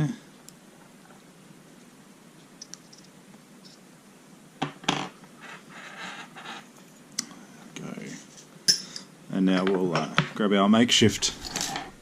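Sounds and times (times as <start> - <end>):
metal scraping in a padlock: 11.3 - 12.0.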